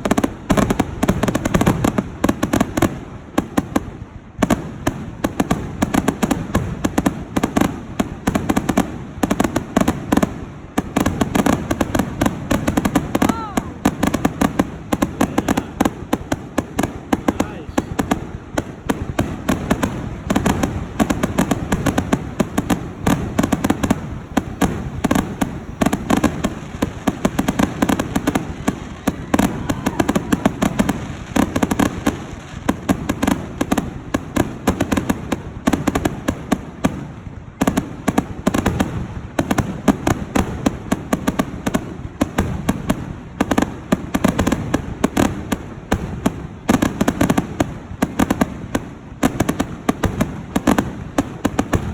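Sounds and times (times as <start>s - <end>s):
fireworks bangs and crackles: 0.0s - 51.9s.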